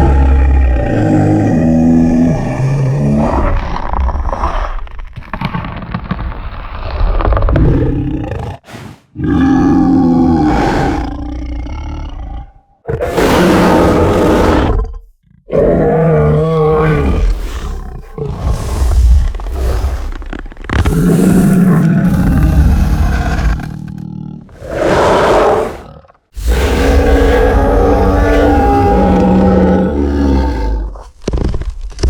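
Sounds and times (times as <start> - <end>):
creature roaring: 0.0 - 4.6, 7.5 - 20.1, 20.8 - 31.0.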